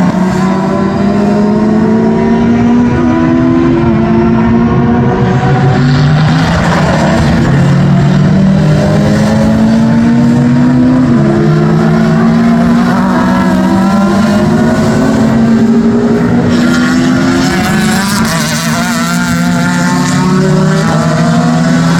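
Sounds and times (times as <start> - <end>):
racing car engines accelerating: 0.0 - 21.9.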